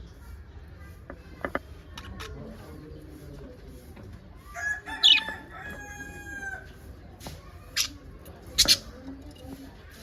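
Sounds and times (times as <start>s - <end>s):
rooster crowing: 4.6s - 6.6s.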